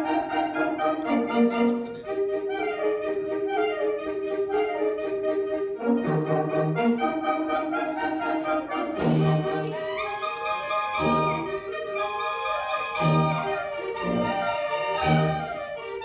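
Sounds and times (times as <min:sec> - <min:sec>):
brass band playing: 0:06.0 - 0:16.0.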